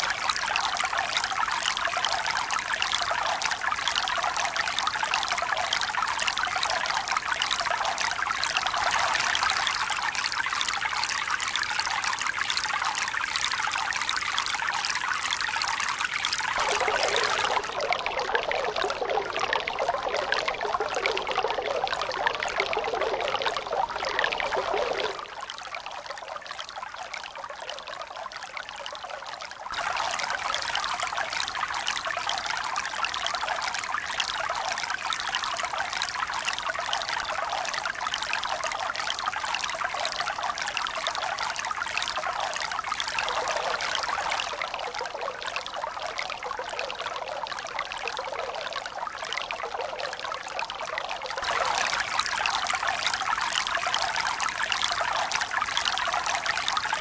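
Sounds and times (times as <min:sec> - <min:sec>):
rush of flowing water: 0:00.0 - 0:18.2, 0:29.7 - 0:37.6, 0:51.4 - 0:57.0.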